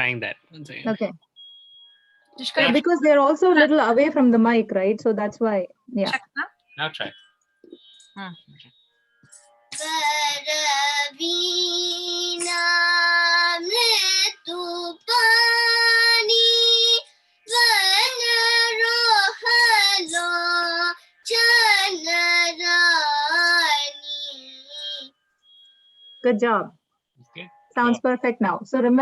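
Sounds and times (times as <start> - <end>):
girl singing: 2.5 - 2.8, 9.7 - 25.1.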